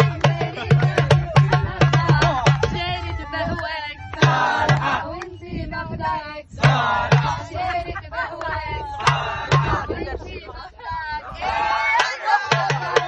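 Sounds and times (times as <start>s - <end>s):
song with thumping drum beat: 0.0s - 3.0s, 4.2s - 5.0s, 6.6s - 7.6s, 9.0s - 9.9s, 12.0s - 13.0s.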